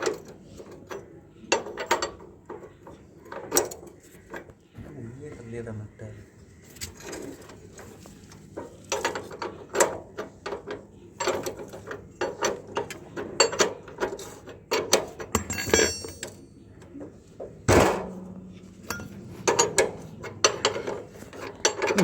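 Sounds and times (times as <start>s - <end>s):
metal parts clinking and knocking: 0.0s - 4.5s, 6.8s - 22.0s
metallic rattles: 6.8s - 22.0s.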